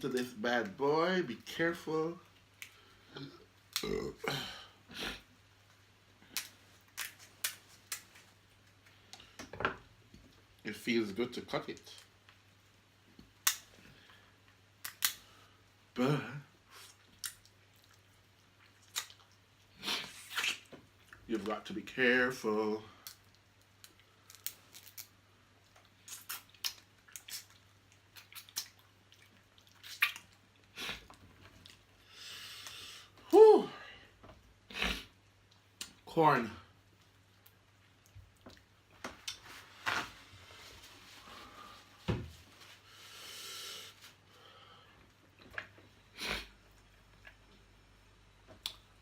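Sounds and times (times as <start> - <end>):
crab shell snipping and cracking: 14.8 - 15.2, 23.8 - 25.1
wet chewing squelches: 16.7 - 21.3, 24.8 - 31.9.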